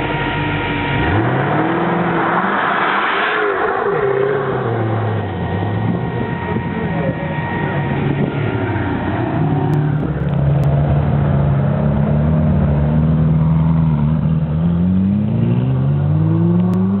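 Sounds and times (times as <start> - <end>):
car engine revving high: 0.0 - 17.0.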